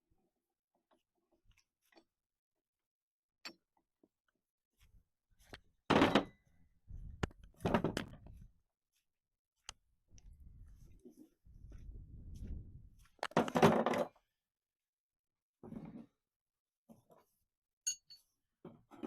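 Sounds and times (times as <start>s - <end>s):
low rumble: 10.2s - 13.0s.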